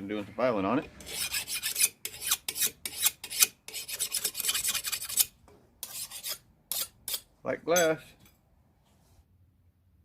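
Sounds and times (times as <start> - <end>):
file scraping steel blade: 0.8 - 8.0.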